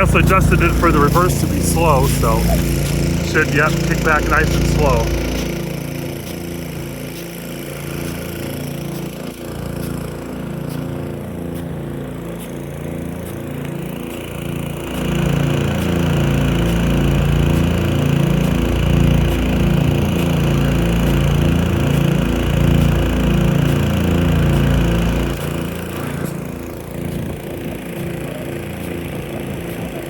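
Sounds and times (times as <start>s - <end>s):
pulsing low rumble: 0.0s - 5.9s
sprinkler water rushing: 0.0s - 11.2s.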